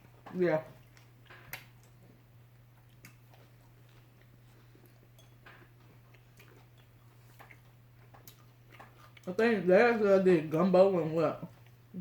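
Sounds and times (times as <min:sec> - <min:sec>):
chewing and mouth sounds: 0:00.0 - 0:09.7, 0:11.4 - 0:12.0.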